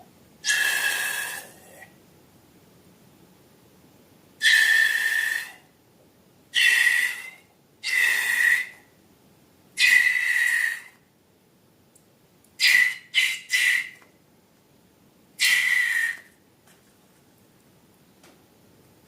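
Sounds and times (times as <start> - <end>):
air squealing out of balloon: 0.4 - 1.8, 4.4 - 5.6, 6.6 - 8.8, 9.8 - 11.0, 12.6 - 14.0, 15.4 - 16.3.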